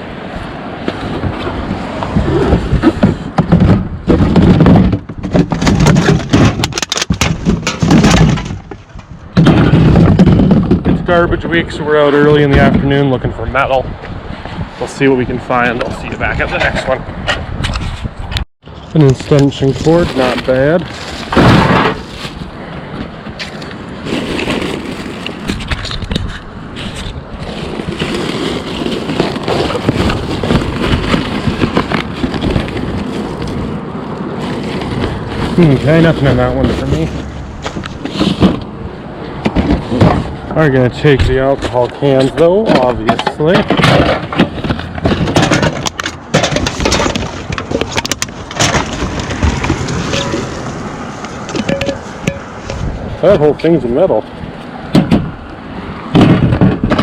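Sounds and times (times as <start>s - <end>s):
trash rustling and clattering: 0.8s - 13.0s, 18.7s - 57.0s
loud thump: 21.3s - 22.1s.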